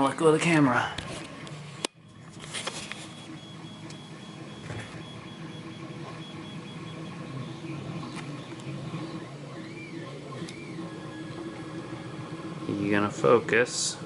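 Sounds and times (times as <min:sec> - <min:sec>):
soft rubbing of camera handling: 0:02.3 - 0:03.2.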